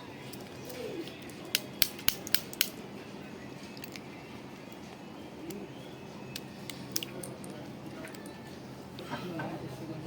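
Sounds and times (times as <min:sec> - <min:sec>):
hand tool clicks: 0:01.2 - 0:02.8.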